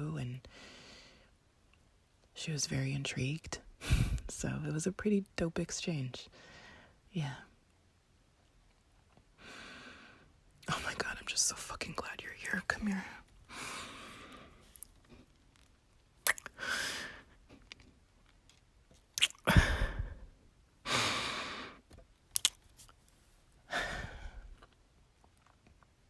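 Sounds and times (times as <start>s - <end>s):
short kisses: 16.2s - 16.6s, 19.2s - 19.5s, 22.3s - 22.6s
woman sighing and breathing: 16.4s - 17.3s, 19.4s - 20.3s, 23.7s - 24.6s.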